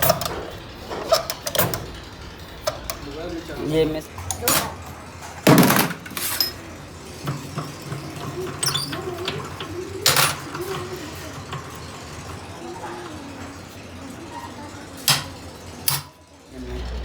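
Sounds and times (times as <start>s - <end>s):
metal tools clinking: 6.0s - 6.7s
faint voices: 6.6s - 17.0s
low steady hum: 16.5s - 17.0s.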